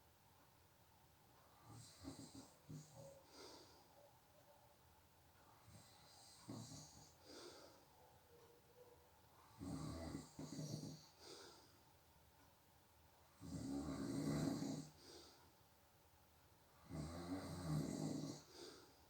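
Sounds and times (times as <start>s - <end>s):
faint breaths: 1.2s - 19.0s
person snoring: 9.6s - 11.1s, 13.4s - 15.0s, 16.8s - 18.6s.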